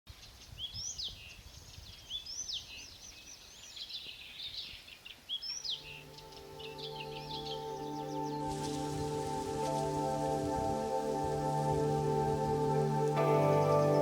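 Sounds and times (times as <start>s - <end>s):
songbird singing: 0.1s - 14.0s
soft held music tones: 5.8s - 14.0s.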